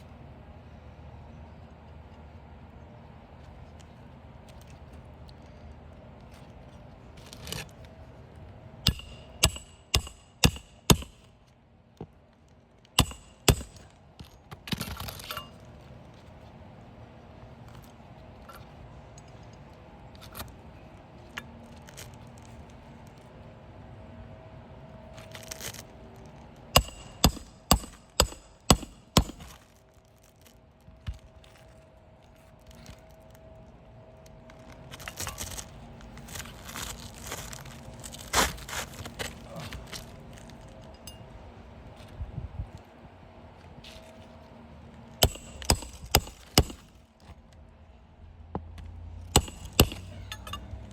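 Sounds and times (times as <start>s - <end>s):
shingle rustling: 6.2s - 8.1s, 34.3s - 42.2s
hammer striking roofing nails: 8.9s - 11.3s, 13.0s - 13.9s, 26.8s - 29.6s, 45.2s - 46.9s, 49.3s - 50.2s.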